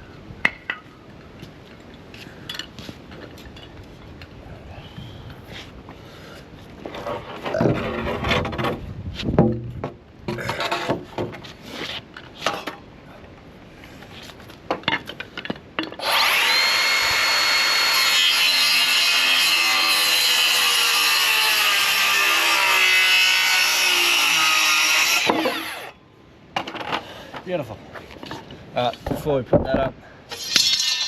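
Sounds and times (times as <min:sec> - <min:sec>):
power saw cutting timber: 0:16.0 - 0:26.0, 0:30.4 - 0:31.0.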